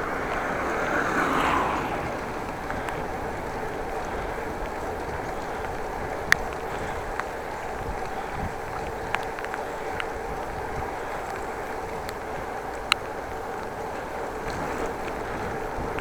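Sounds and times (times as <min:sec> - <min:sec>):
wind rushing: 0:00.0 - 0:06.0
bicycle tyre noise: 0:00.0 - 0:16.0.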